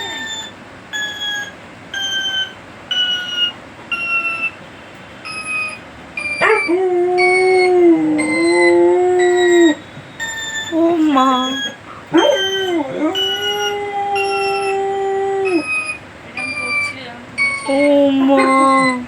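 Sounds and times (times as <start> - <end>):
descending beeping tones: 0.0 - 4.6, 5.2 - 19.0
dog howling: 6.3 - 9.8, 10.7 - 15.9, 17.5 - 19.0.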